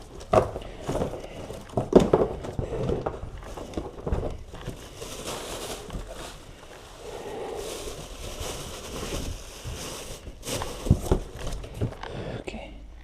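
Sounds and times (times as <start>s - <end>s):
rustling and handling noise: 0.0s - 12.3s
heavy breathing: 0.4s - 5.2s, 6.4s - 8.9s, 11.5s - 12.9s.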